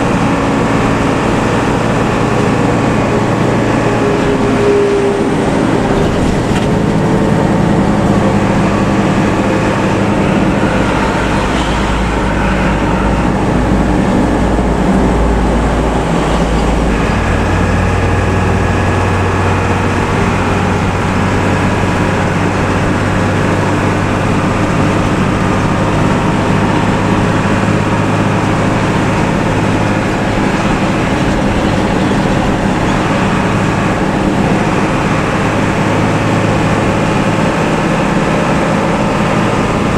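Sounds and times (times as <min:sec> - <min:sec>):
bus diesel engine rasping drone: 0:00.0 - 0:39.9.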